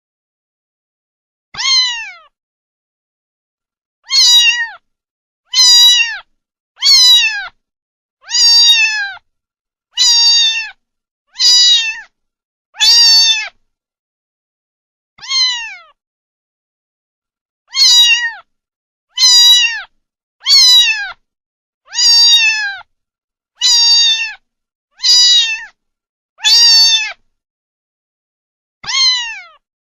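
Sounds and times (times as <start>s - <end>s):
cat meowing: 1.6s - 2.3s, 4.0s - 4.8s, 5.5s - 7.6s, 8.2s - 9.2s, 10.0s - 12.1s, 12.8s - 13.6s, 15.2s - 16.0s, 17.7s - 18.5s, 19.1s - 21.2s, 21.9s - 22.9s, 23.6s - 24.4s, 25.0s - 25.8s, 26.4s - 27.2s, 28.8s - 29.7s.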